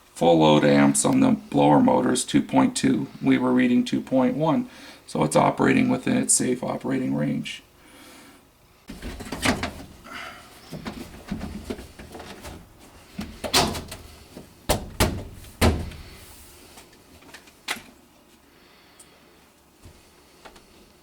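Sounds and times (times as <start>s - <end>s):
equipment handling noise: 8.9s - 17.9s.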